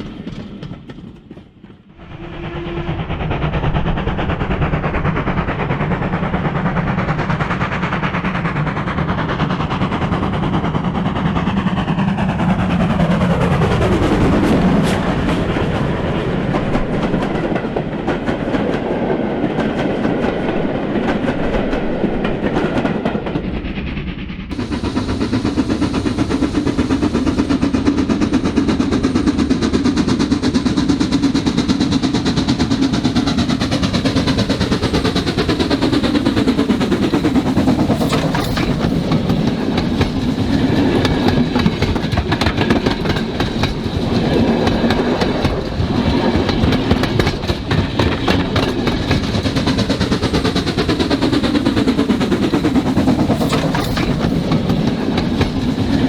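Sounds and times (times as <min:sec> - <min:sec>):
model train motor hum: 0:24.5 - 0:29.6
wheels clicking over rail joints: 0:24.5 - 0:56.0.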